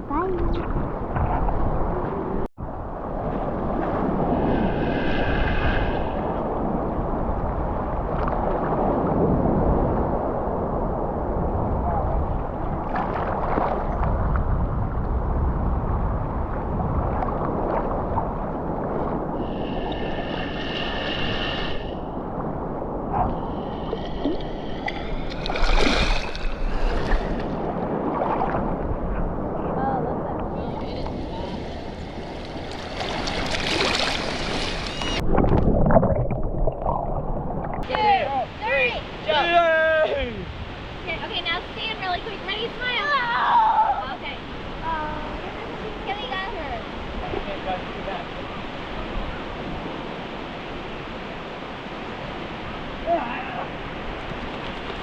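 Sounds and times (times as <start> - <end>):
ocean surf: 0.0 - 55.0
wind on microphone: 0.0 - 55.0
distant high-pitched calls: 34.6 - 35.2.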